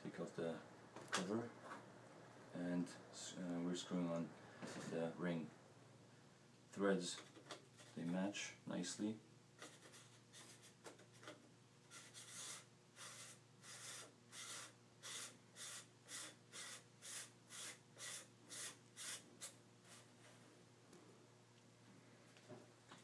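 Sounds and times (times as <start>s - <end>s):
lens ring rubbing scrape: 11.9s - 20.0s.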